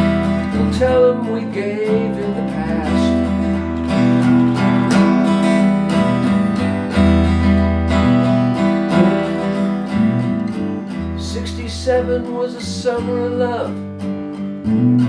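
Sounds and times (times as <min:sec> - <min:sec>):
acoustic guitar strumming: 0:00.0 - 0:15.0
low bass notes: 0:05.9 - 0:11.3.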